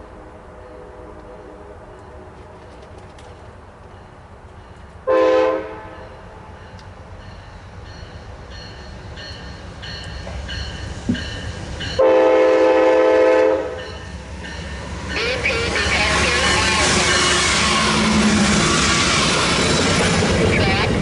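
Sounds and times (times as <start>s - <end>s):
rumble of approaching train: 0.0s - 21.0s
locomotive air horn: 5.1s - 6.1s, 12.0s - 13.9s.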